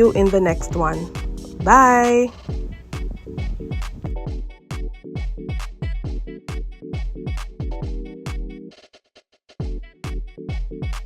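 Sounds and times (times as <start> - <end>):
electronic dance music: 0.0 - 8.6.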